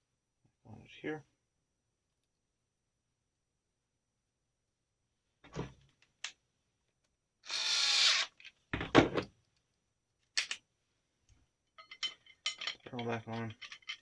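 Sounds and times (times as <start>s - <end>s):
metal rifle parts clicking: 11.8s - 14.0s.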